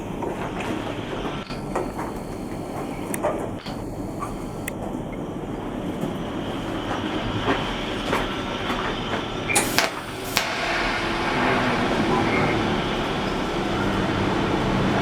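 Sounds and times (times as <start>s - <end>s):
welding arc hissing: 1.0s - 4.8s, 9.5s - 15.0s
sharp clicks and snaps: 1.4s - 4.8s.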